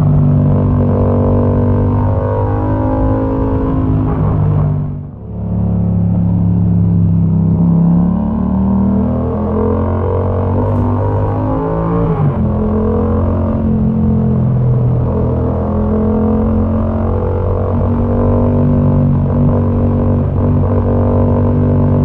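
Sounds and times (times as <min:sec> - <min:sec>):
motorcycle engine revving: 0:00.0 - 0:22.0.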